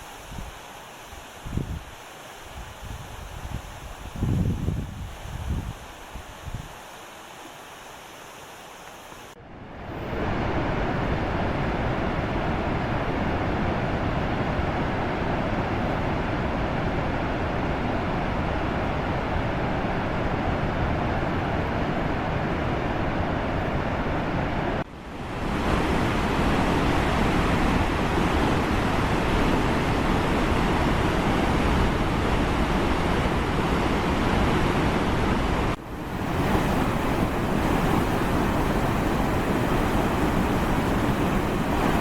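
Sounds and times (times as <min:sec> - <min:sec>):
steady rushing noise: 0:24.8 - 0:42.0.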